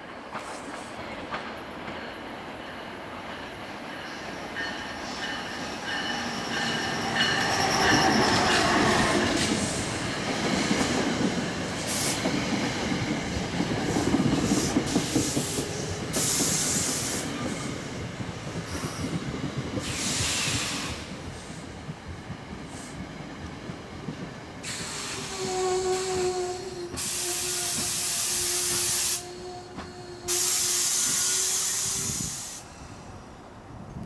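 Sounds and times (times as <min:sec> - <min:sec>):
train rumbling on rails: 0:00.0 - 0:34.0
train wheels squealing: 0:03.9 - 0:10.3, 0:24.6 - 0:33.4
short bursts of hiss: 0:19.8 - 0:21.1, 0:30.3 - 0:33.0.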